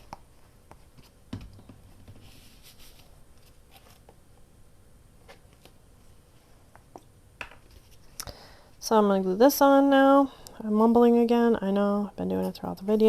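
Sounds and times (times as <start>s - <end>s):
paper rustle: 2.2s - 4.1s.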